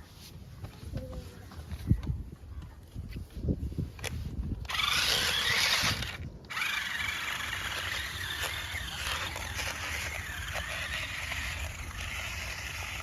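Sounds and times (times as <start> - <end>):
toy car motor whining: 4.6 - 13.0.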